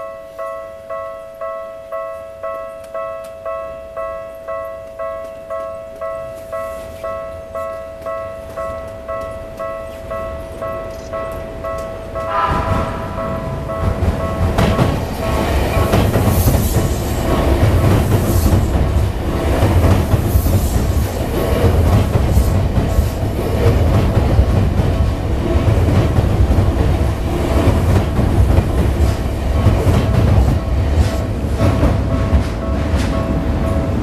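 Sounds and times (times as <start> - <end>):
faint steady high tones: 0.0 - 15.9
train wheels rumbling on rails: 5.2 - 34.0.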